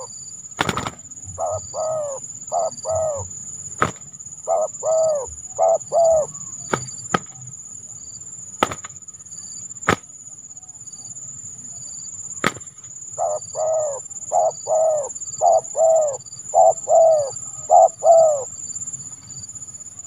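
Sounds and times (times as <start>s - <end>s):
dove cooing: 0.0s - 6.9s, 13.2s - 18.6s.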